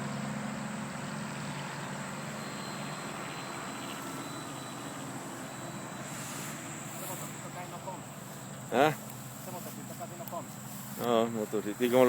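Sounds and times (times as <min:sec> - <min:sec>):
model plane motor buzzing: 0:01.6 - 0:07.8
thin high whine: 0:01.6 - 0:12.0.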